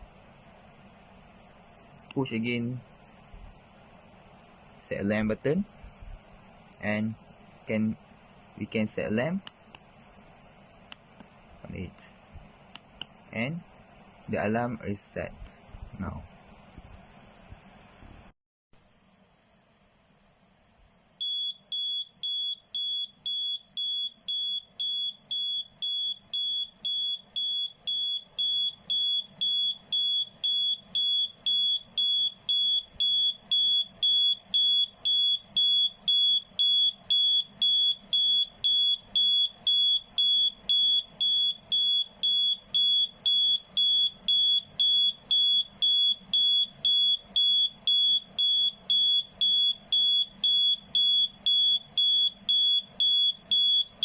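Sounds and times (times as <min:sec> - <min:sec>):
high electronic alarm beeps: 0:21.2 - 0:54.0.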